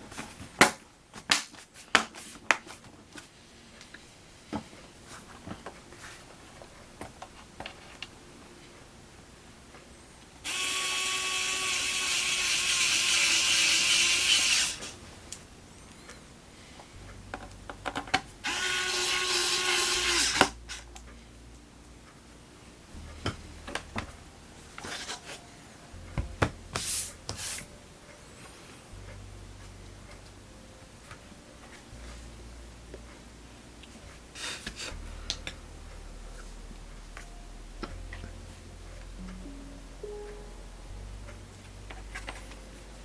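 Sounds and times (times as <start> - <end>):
electric screwdriver running: 10.5 - 14.9, 18.4 - 20.6.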